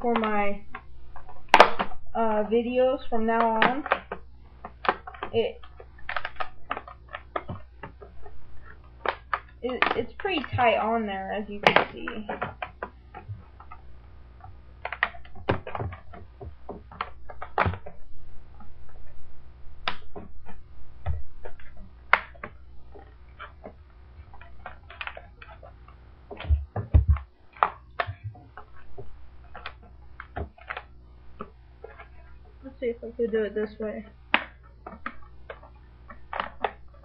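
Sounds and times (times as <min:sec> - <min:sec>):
heavy thumps: 0:03.3 - 0:32.7.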